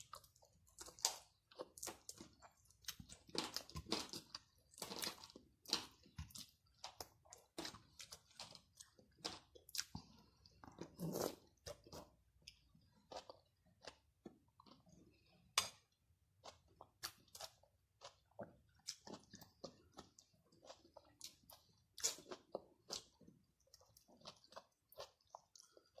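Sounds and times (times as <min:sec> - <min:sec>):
person chewing food: 0:00.0 - 0:26.0
food crunch: 0:00.1 - 0:14.9.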